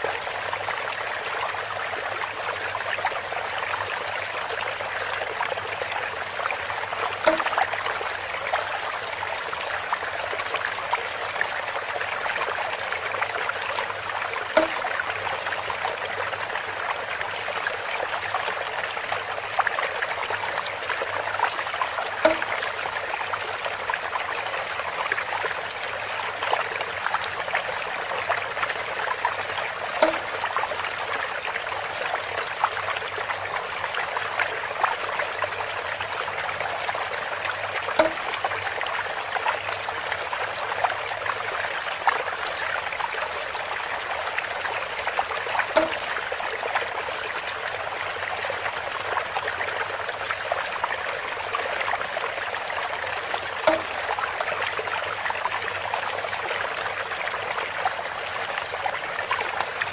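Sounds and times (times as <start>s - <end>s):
water trickling through bamboo spout: 0.0s - 59.9s
hollow pitched plonk: 14.6s - 14.9s, 22.2s - 22.5s, 30.0s - 30.3s, 45.8s - 46.0s.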